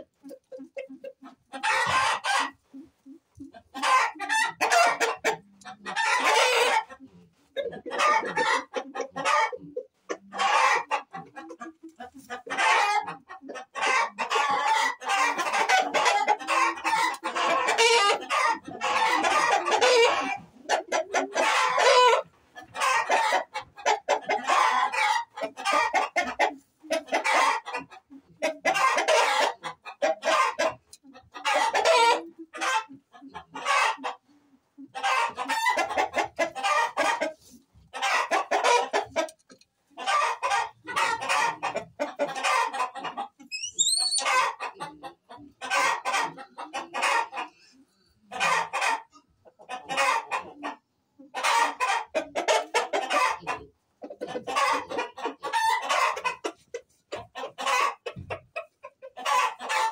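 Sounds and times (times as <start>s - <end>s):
chickens clucking: 0.0s - 59.9s
roosters crowing: 6.0s - 6.9s, 13.9s - 20.4s.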